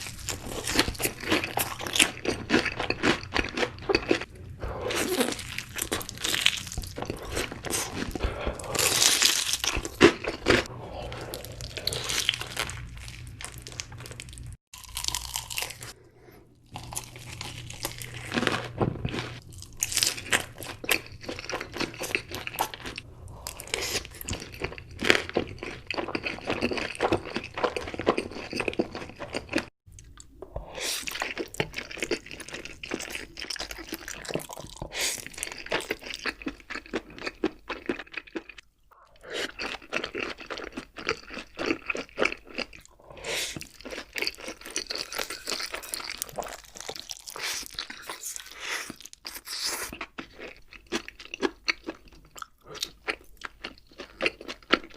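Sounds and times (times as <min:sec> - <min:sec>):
crunchy chewing: 0:00.0 - 0:16.0, 0:30.9 - 0:54.9.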